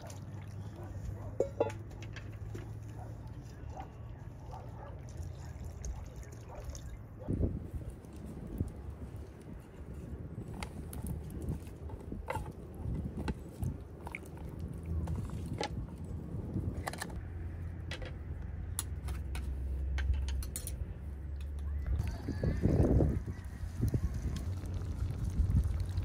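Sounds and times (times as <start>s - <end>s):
cooking utensils clicking and knocking: 1.4s - 2.8s, 18.8s - 21.6s.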